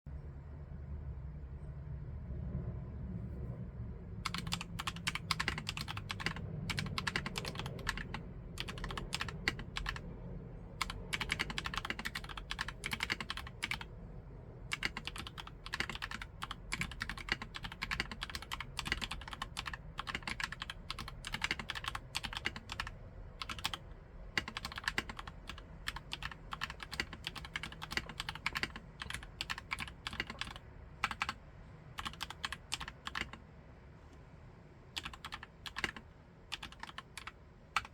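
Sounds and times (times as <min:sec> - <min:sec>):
mechanical keyboard typing: 0:04.2 - 0:10.0, 0:10.8 - 0:13.9, 0:14.7 - 0:31.4, 0:32.0 - 0:33.4, 0:35.0 - 0:37.9.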